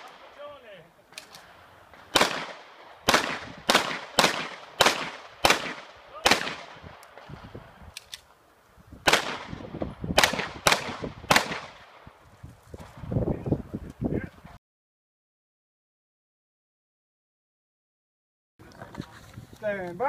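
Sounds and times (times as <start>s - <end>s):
rapid pistol shots: 2.0s - 6.9s, 9.1s - 9.6s, 10.2s - 12.0s.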